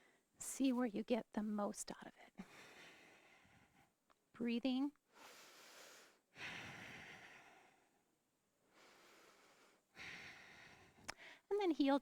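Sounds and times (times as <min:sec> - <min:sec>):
woman breathing slowly: 0:02.3 - 0:04.0, 0:05.1 - 0:11.5.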